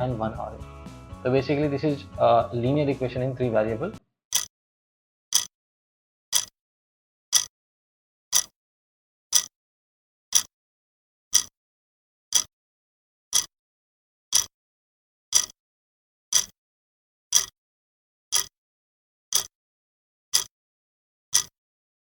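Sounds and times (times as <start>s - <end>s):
clock ticking: 4.3s - 4.5s, 5.3s - 5.5s, 6.3s - 6.5s, 7.3s - 7.5s, 8.3s - 8.5s, 9.3s - 9.5s, 10.3s - 10.5s, 11.3s - 11.5s, 12.3s - 12.5s, 13.3s - 13.5s, 14.3s - 14.5s, 15.3s - 15.6s, 16.3s - 16.5s, 17.3s - 17.5s, 18.3s - 18.5s, 19.3s - 19.5s.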